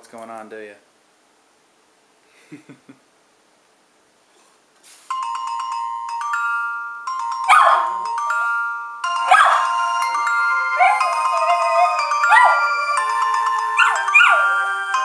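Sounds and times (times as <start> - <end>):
electronic ringtone melody: 5.1 - 15.0
dog howling: 10.7 - 13.1, 13.7 - 14.9.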